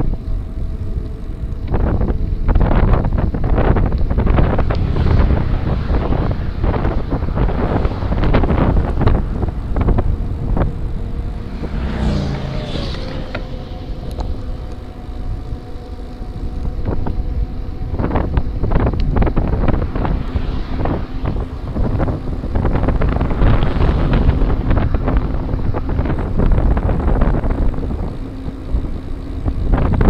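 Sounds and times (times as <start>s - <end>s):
faint steady whine: 0.0s - 30.0s
wind buffeting microphone: 0.0s - 30.0s
falling tone: 3.4s - 26.8s.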